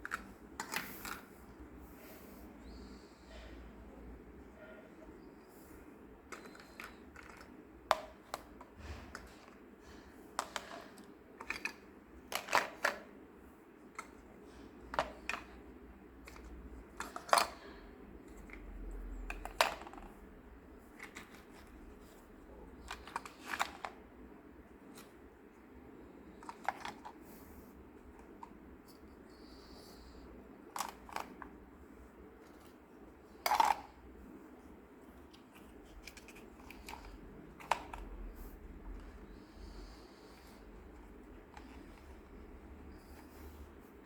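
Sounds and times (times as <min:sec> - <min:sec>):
plastic toy pieces clicking: 0:06.3 - 0:09.5, 0:10.4 - 0:13.1, 0:22.8 - 0:24.0, 0:30.7 - 0:31.6, 0:33.4 - 0:34.0.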